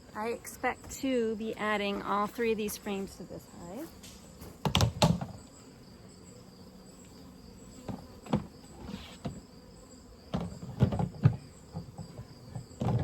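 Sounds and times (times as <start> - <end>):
crickets trilling: 0.0 - 13.0
wooden knocks and clunks: 4.6 - 5.4, 7.8 - 9.4, 10.3 - 13.0.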